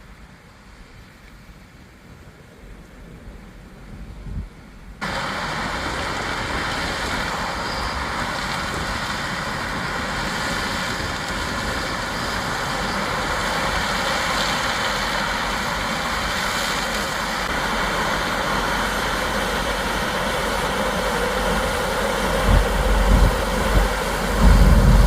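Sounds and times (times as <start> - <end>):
heavy harvest machinery running: 5.0 - 25.0.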